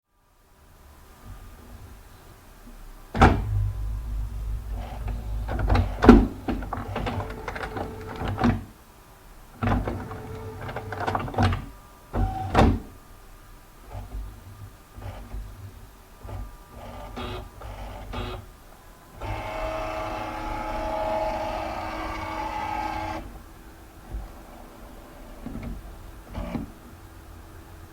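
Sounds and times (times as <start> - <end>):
scanner clunk: 3.1 - 8.7
scanner knock: 3.2 - 8.6
scanner motor and carriage running: 3.4 - 8.6.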